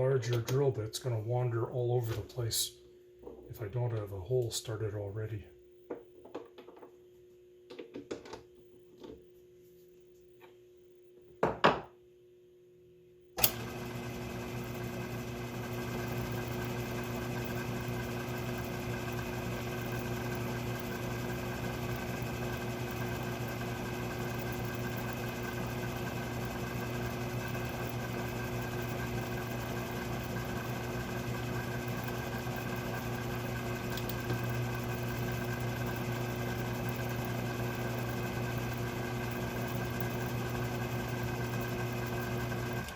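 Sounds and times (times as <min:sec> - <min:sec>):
lathe motor hum and whine: 0:13.4 - 0:42.9.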